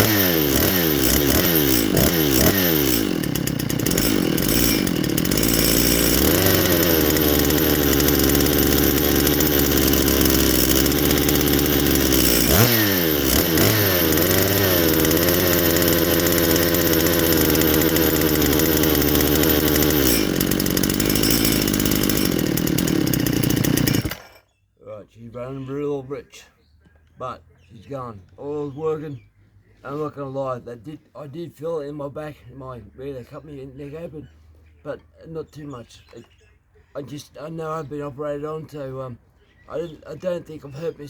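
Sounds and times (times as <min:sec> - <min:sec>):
chainsaw engine running: 0:00.0 - 0:24.4.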